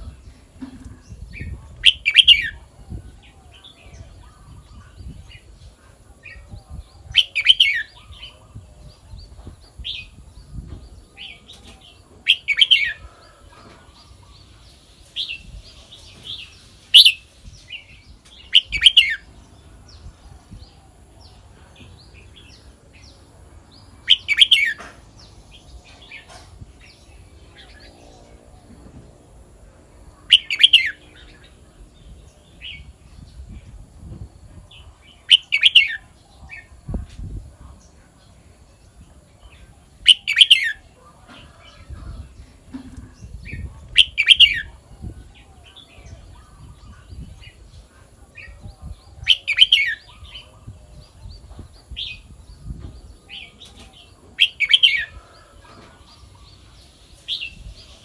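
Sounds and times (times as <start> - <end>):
bulbul singing warbled phrases: 0.0 - 10.6, 30.2 - 33.0, 34.6 - 55.3.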